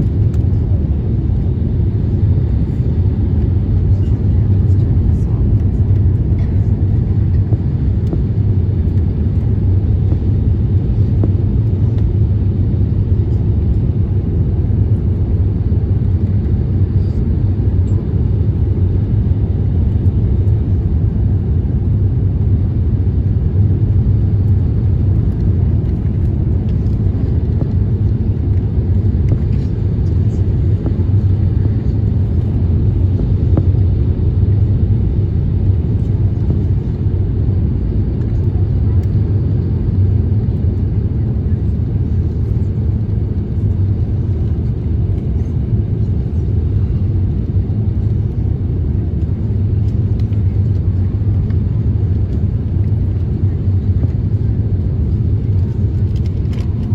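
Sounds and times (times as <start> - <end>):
aircraft cabin engine rumble: 0.0 - 56.9.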